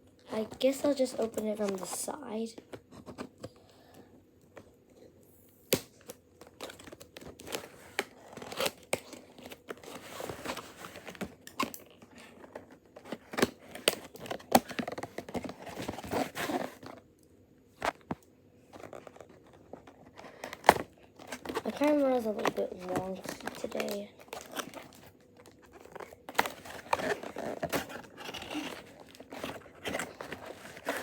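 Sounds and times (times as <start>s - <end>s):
box tearing and crinkling: 6.4s - 17.0s, 18.8s - 31.0s.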